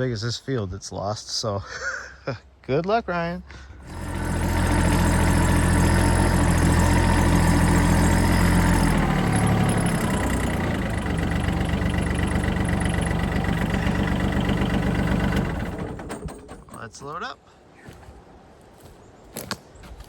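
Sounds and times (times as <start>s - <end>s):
tractor engine running: 3.4s - 17.2s.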